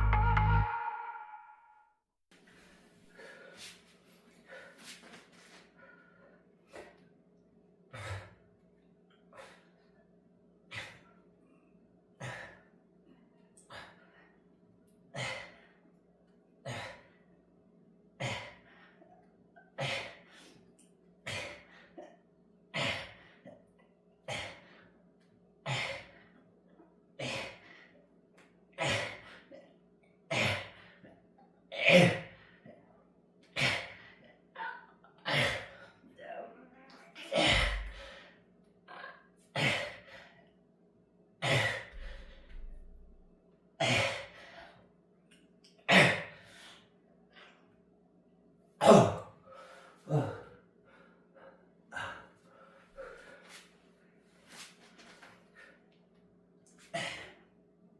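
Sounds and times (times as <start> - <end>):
person breathing forcefully: 37.4 - 38.4, 41.5 - 43.0.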